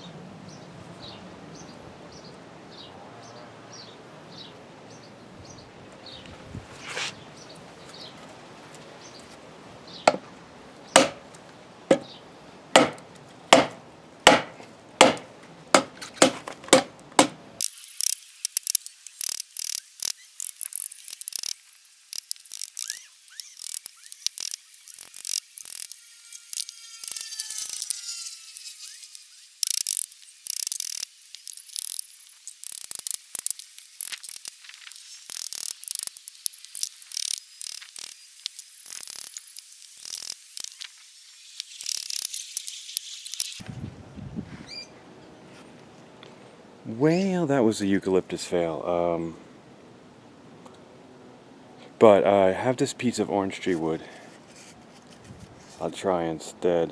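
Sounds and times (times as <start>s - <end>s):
heavy blows on a log: 10.1s - 10.3s, 11.0s - 11.3s, 11.9s - 12.1s, 12.8s - 17.4s.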